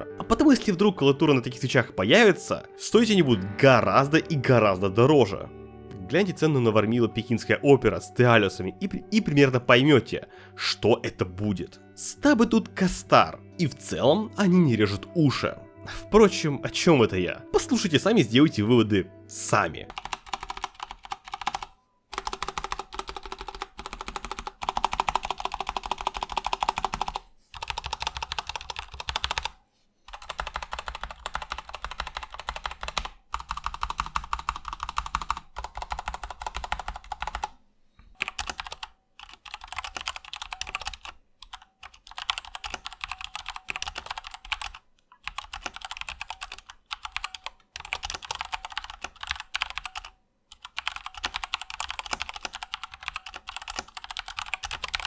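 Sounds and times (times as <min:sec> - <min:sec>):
fast typing on mechanical keyboard: 0:19.9 - 0:37.5, 0:38.2 - 0:55.0.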